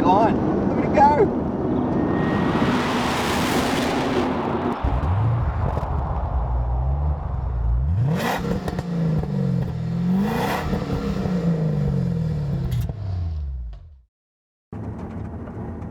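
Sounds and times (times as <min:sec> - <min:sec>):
car engine accelerating: 0:01.3 - 0:14.0.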